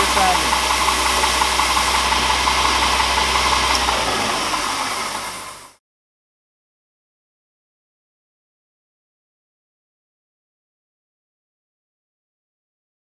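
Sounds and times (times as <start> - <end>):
belt sander hissing: 0.0 - 5.8
low motor hum: 0.0 - 5.8.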